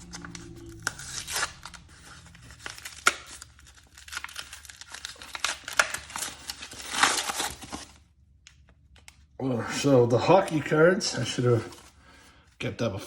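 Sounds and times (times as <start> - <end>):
blister pack tearing and crinkling: 0.0 - 8.0.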